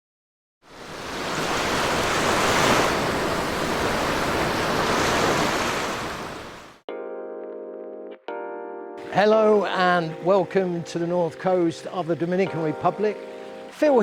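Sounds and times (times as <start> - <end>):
ocean waves washing in: 0.6 - 6.8, 9.0 - 14.0.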